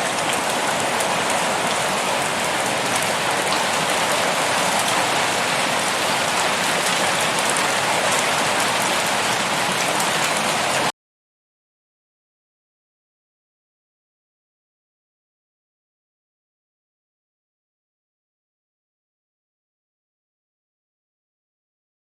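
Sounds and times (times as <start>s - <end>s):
steady rain patter: 0.0s - 10.9s.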